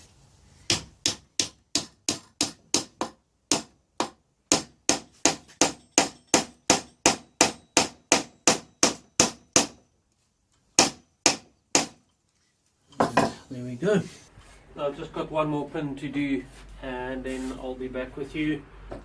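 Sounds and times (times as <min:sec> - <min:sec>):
hammer striking wooden peg: 0:00.7 - 0:09.9, 0:10.7 - 0:12.2.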